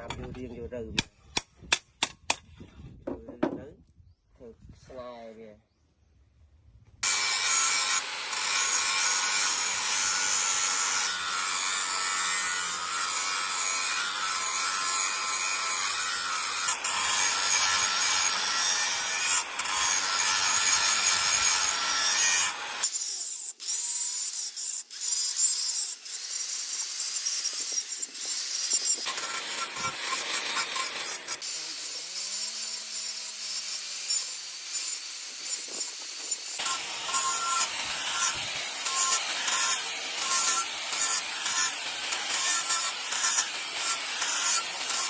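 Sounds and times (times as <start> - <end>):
knife blade being ground: 36.6 - 45.0.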